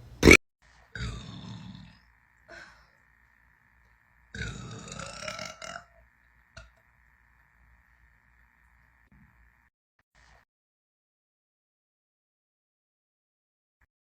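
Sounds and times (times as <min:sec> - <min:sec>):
person burping: 0:00.2 - 0:02.9, 0:04.3 - 0:06.0.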